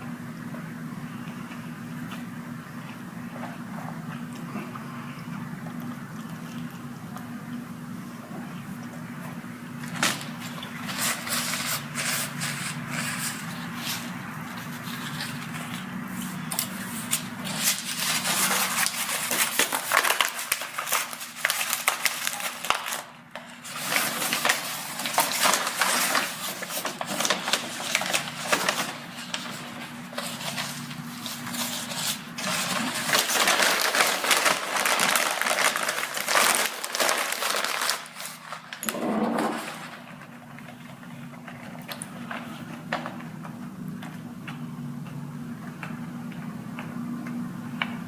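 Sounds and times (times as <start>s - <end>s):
steady low hum: 0.0s - 22.0s
crackling and crinkling noise: 0.6s - 38.9s.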